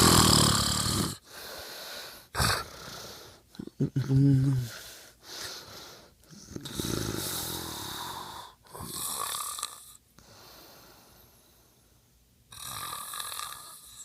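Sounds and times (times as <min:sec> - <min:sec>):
man snoring: 0:00.0 - 0:01.3, 0:02.3 - 0:03.1, 0:06.5 - 0:10.0, 0:12.5 - 0:14.0.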